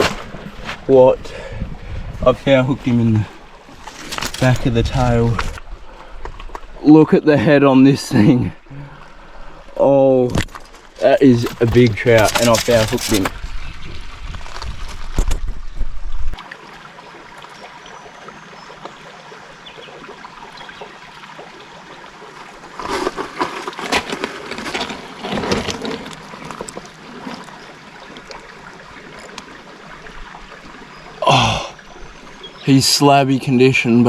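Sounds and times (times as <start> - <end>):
creek water over rocks: 0.0 - 34.0
splashing and knocking: 10.2 - 13.4, 22.7 - 27.6.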